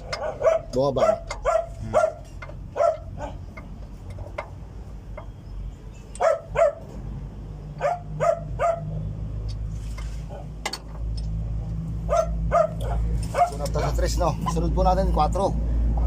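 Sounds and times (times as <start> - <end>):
dog barking: 0.1 - 3.4, 6.2 - 6.9, 7.8 - 9.0, 12.1 - 13.6.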